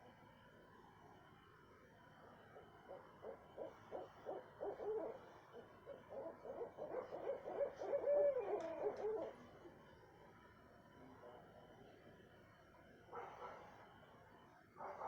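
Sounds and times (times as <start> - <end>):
owl hooting: 2.9 - 9.3.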